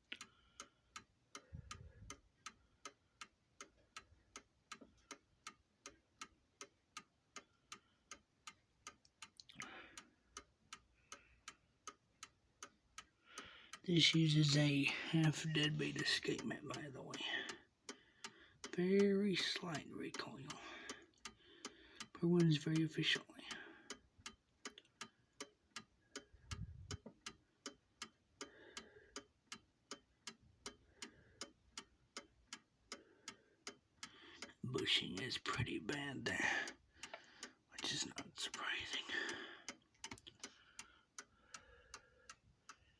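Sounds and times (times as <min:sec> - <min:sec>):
clock ticking: 0:00.0 - 0:42.9.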